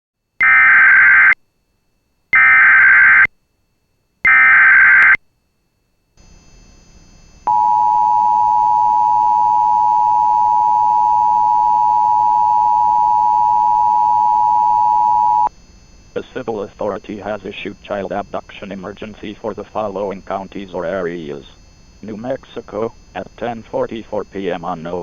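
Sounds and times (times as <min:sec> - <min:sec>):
steady attention tone: 0:04.3 - 0:25.0
warbling digital data tones: 0:07.5 - 0:25.0.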